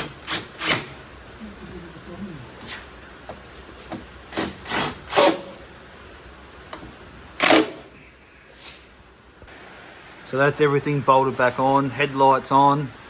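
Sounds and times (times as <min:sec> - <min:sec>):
cordless drill bursts: 0:07.4 - 0:07.8.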